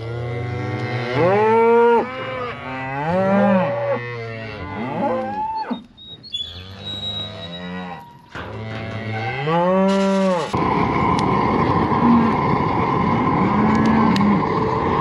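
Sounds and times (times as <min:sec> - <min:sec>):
cattle mooing: 0:00.0 - 0:10.6, 0:13.2 - 0:14.7
loud steady rushing noise: 0:10.6 - 0:15.0.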